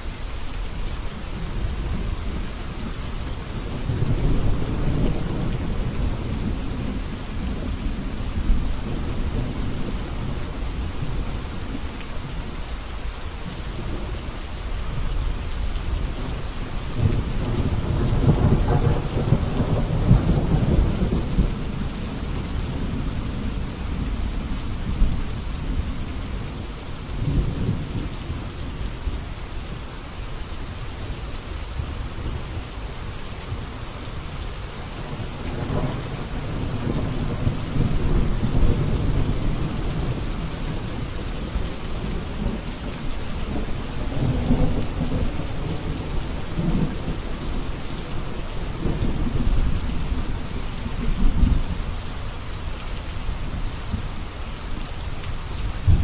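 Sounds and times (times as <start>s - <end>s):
steady rain: 0.0s - 56.0s
rolling thunder: 16.0s - 28.6s, 35.0s - 51.9s, 55.8s - 56.0s.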